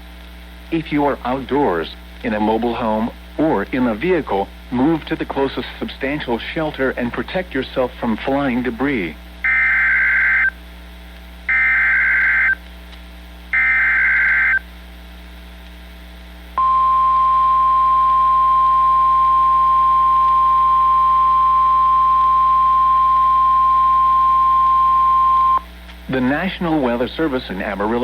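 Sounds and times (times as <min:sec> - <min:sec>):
steady warning alarm tone: 0:09.4 - 0:10.6, 0:11.5 - 0:12.6, 0:13.5 - 0:14.7, 0:16.6 - 0:25.7
warbling digital data bursts: 0:09.4 - 0:10.6, 0:11.5 - 0:12.6, 0:13.5 - 0:14.6.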